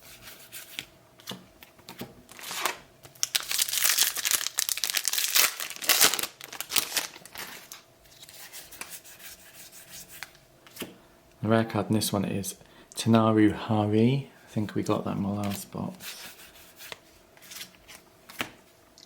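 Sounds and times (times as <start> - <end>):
wrapper tearing and crinkling: 2.3 - 7.8.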